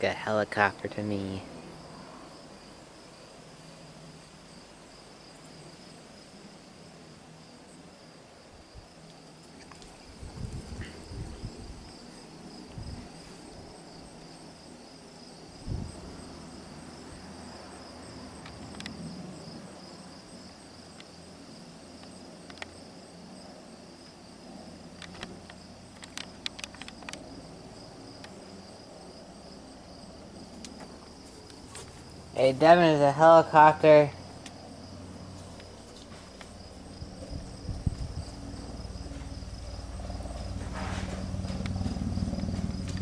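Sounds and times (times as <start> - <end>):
crickets chirping: 0.0 - 43.0
sharp clicks: 22.0 - 22.7, 25.0 - 27.3.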